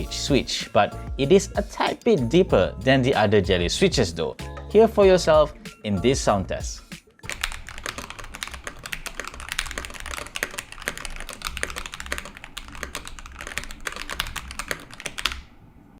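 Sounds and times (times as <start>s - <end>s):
mechanical keyboard typing: 7.2s - 15.5s.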